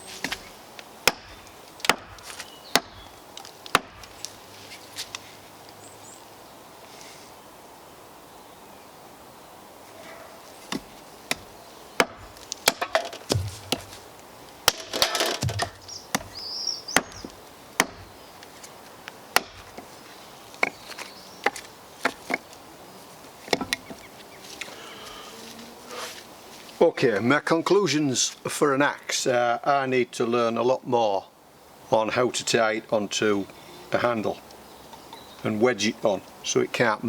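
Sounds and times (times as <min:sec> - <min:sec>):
axe chopping wood: 0:00.2 - 0:03.1, 0:03.7 - 0:04.1, 0:10.7 - 0:16.4, 0:17.0 - 0:18.2, 0:19.3 - 0:19.9, 0:21.4 - 0:22.4, 0:23.5 - 0:24.0.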